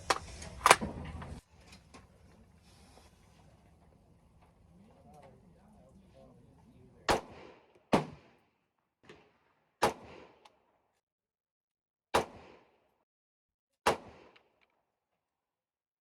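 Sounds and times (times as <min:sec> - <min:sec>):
shotgun blasts with echo: 0:07.0 - 0:08.4, 0:09.0 - 0:10.5, 0:12.2 - 0:12.8, 0:13.8 - 0:14.6
faint distant gunshot: 0:07.1 - 0:08.4, 0:09.1 - 0:10.4.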